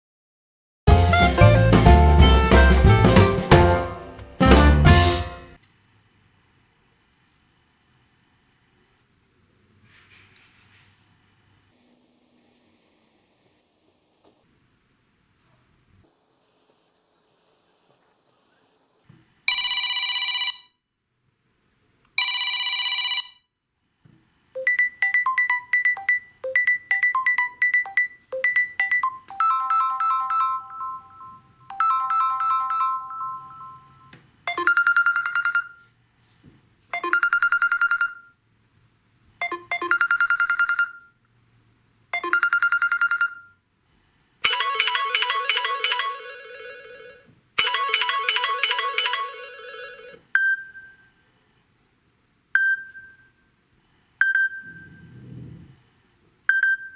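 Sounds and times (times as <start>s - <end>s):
phone ringtones: 19.5s - 20.7s, 22.2s - 23.4s, 24.6s - 35.9s, 37.0s - 38.3s, 39.4s - 41.1s, 42.2s - 43.5s, 44.4s - 51.1s
chime: 29.5s - 34.1s.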